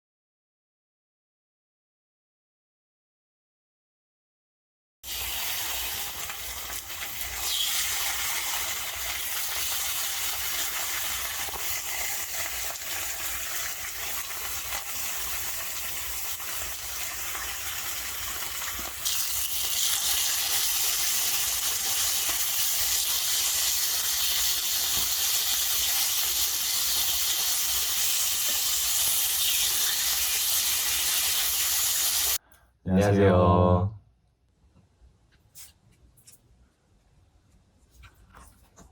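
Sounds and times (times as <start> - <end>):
meat sizzling on a grill: 5.0 - 32.4.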